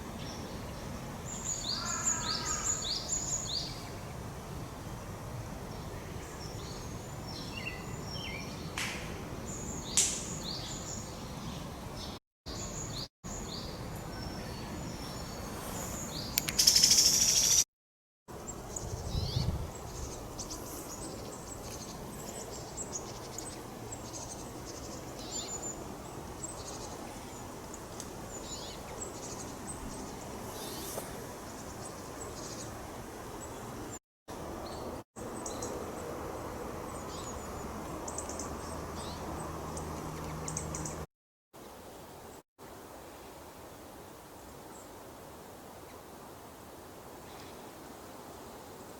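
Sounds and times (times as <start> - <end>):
steady background hiss: 0.0 - 17.6, 18.3 - 48.9
wild birds chirping: 0.1 - 4.2, 9.4 - 17.7, 18.3 - 41.1.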